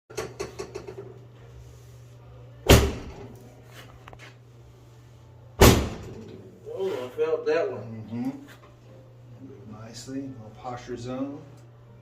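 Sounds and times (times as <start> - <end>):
sharp loud thud: 5.6 - 6.1.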